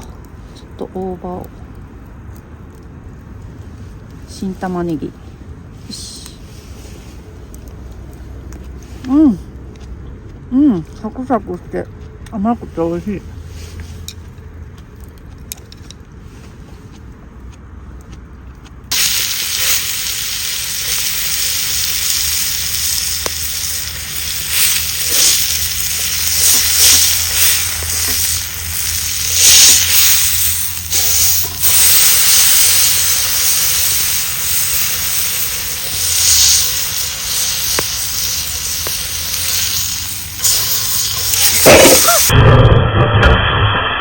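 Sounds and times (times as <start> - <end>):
food sizzling in frying pan: 18.9 - 42.4.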